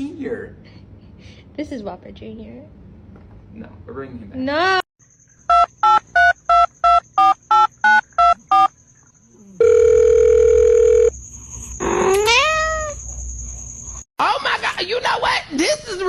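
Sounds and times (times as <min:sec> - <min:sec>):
steady dial tone: 0:09.6 - 0:11.1.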